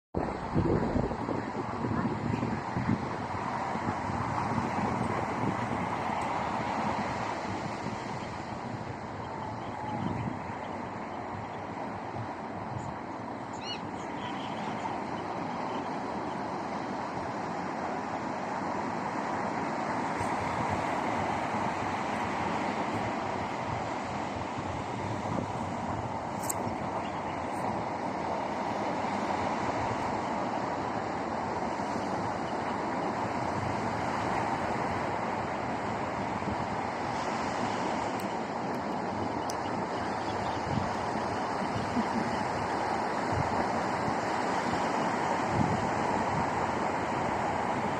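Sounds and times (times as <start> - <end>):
wind buffeting microphone: 0.2 - 13.4, 20.2 - 27.8, 45.4 - 47.9
sea surf: 0.2 - 47.9.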